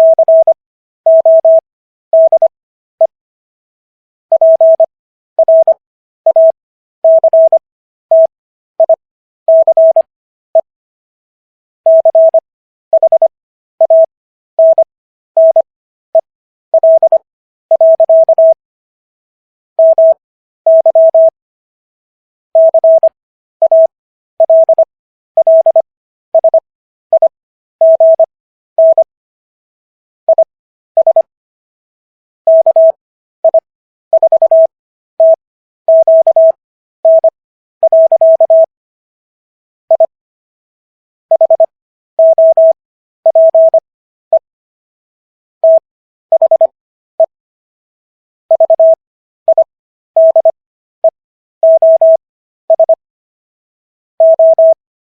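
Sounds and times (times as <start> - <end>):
morse code beeps: 0.0 - 1.6, 2.2 - 3.2, 4.3 - 10.7, 11.9 - 12.4, 13.0 - 18.6, 19.8 - 21.4, 22.6 - 25.8, 26.4 - 29.1, 30.3 - 31.3, 32.5 - 38.7, 39.9 - 40.2, 41.3 - 44.5, 45.6 - 47.4, 48.5 - 50.6, 51.6 - 53.0, 54.2 - 54.8.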